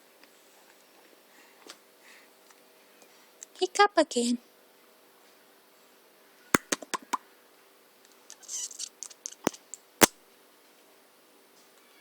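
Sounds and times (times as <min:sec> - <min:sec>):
sharp clicks: 0:06.6 - 0:07.0.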